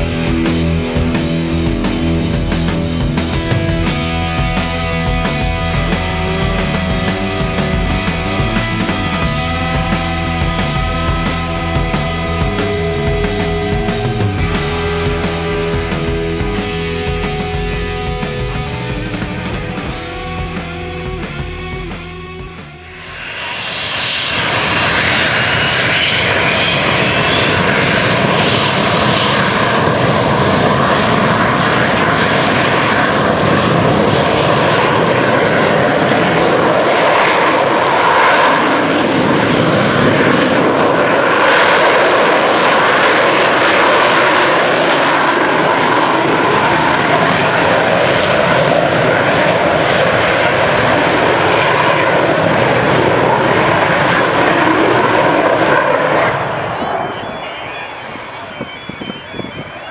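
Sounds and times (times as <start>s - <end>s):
aircraft engine rushing: 0.0s - 59.9s
faint high whine: 22.6s - 35.7s, 56.3s - 59.9s.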